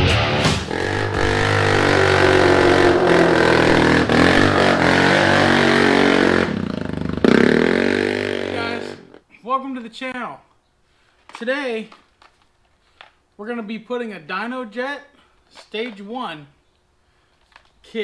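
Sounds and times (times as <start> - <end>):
quad bike engine revving: 0.0 - 9.2.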